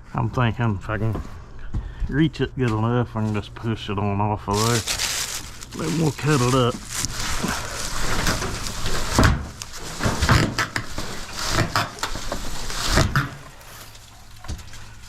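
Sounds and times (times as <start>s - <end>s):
branches rustling and crackling: 4.5s - 15.0s
knocks of dragged tree: 4.6s - 14.8s.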